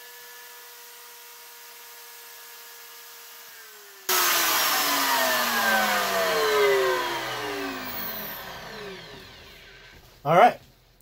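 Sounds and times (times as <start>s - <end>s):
router motor whining: 2.4s - 10.0s.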